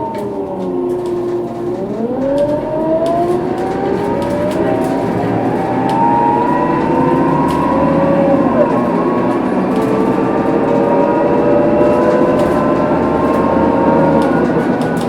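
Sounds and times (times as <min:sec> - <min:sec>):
bus differential whining: 0:00.0 - 0:15.0
bus engine rumble: 0:00.0 - 0:15.0.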